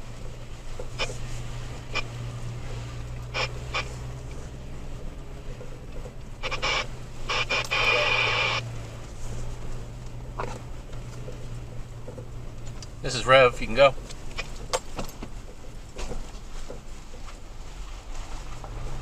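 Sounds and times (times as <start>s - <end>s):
vehicle cabin drone: 0.0s - 19.0s
two-way radio static: 0.8s - 4.5s, 6.3s - 8.8s.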